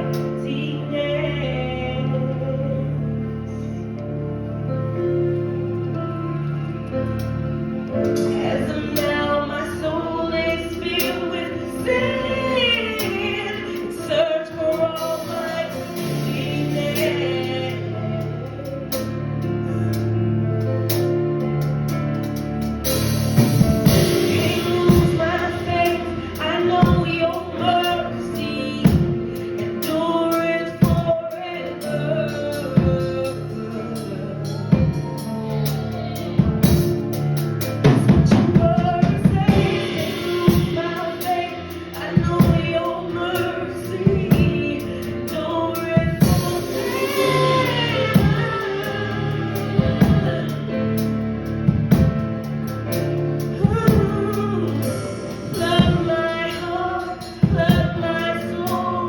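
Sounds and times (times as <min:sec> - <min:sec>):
person singing: 0:08.0 - 0:19.8, 0:23.4 - 0:51.7, 0:53.5 - 0:59.0
band with steady drum beat: 0:14.7 - 0:17.8, 0:22.2 - 0:31.2, 0:31.8 - 0:59.0.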